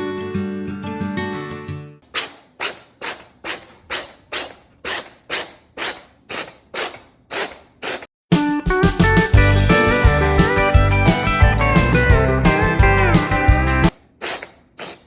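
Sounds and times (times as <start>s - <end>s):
background music: 8.3s - 13.9s.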